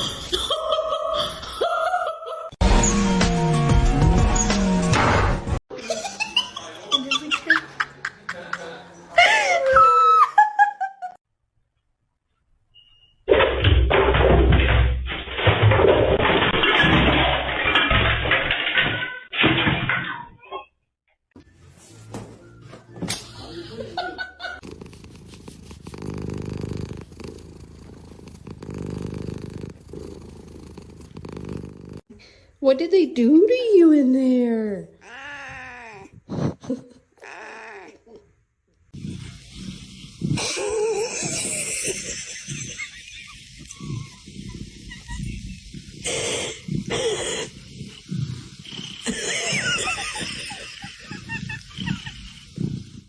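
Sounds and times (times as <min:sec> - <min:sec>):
cat purring: 0:24.6 - 0:32.1, 0:39.0 - 0:53.0.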